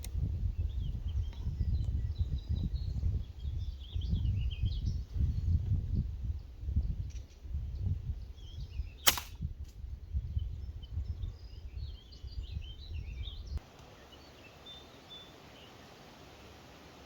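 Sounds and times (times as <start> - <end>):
small birds chirping: 0.0 - 9.2, 9.9 - 17.0
air rifle shot crack: 9.0 - 9.4.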